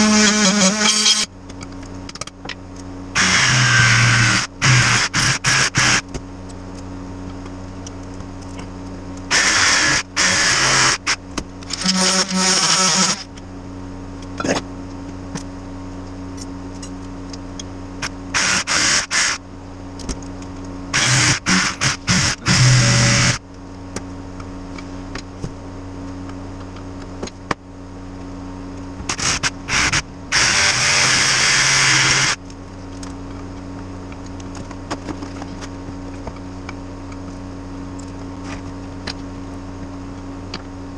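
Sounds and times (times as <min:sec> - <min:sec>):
power tools cutting tire: 0:00.0 - 0:01.3, 0:03.2 - 0:06.0, 0:09.3 - 0:13.3, 0:18.3 - 0:19.4, 0:20.9 - 0:23.4, 0:29.1 - 0:32.4
steady hum: 0:00.0 - 0:40.9.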